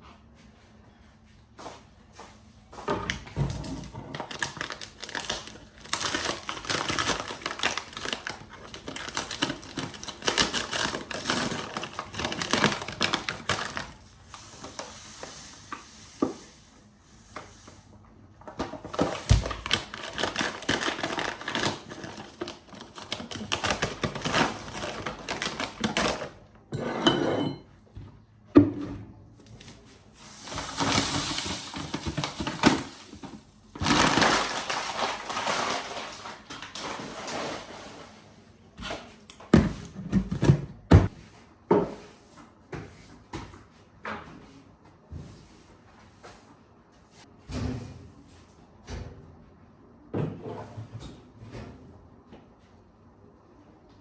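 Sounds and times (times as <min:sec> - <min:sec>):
utensils and dishes clattering: 0:23.0 - 0:27.8.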